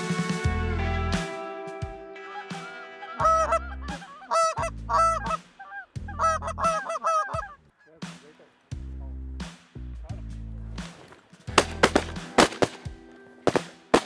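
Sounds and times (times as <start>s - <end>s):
background music: 0.0s - 7.6s, 10.6s - 14.0s
geese honking: 3.2s - 7.6s.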